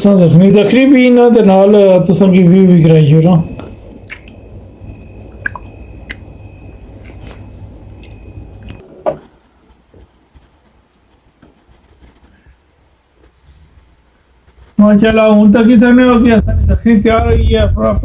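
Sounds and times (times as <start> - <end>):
liquid splashing and dripping: 3.6 - 8.8
low rumble: 16.0 - 18.0.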